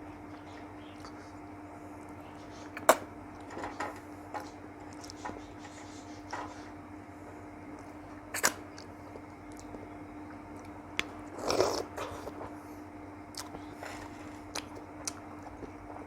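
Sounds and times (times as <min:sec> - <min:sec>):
steady low hum: 0:00.0 - 0:16.0
person chewing sweets: 0:07.7 - 0:12.6, 0:13.3 - 0:16.0.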